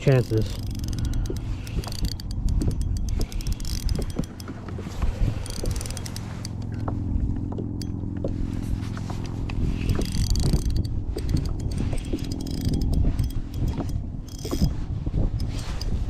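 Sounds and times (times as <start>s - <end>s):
scattered clicks: 0.0s - 8.2s, 9.9s - 16.0s
low mechanical hum: 0.0s - 16.0s
wind buffeting microphone: 9.4s - 16.0s.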